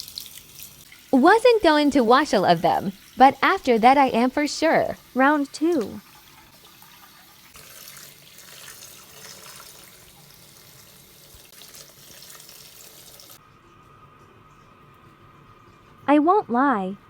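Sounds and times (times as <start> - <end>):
water running in sink: 0.0 - 13.4.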